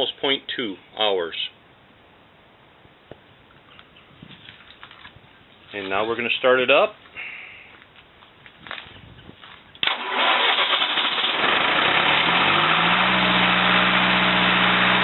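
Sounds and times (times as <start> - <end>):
diesel engine starting: 9.8 - 15.0.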